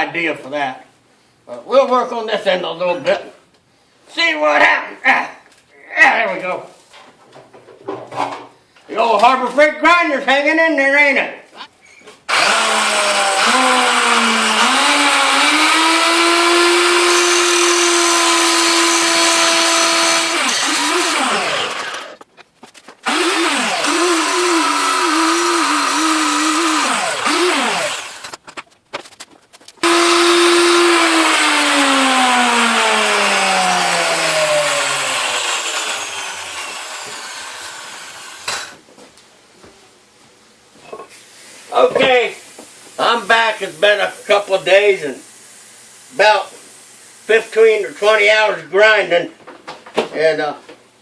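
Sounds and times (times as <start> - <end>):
grinder grinding steel: 12.3 - 22.4, 23.0 - 28.4, 29.8 - 38.8.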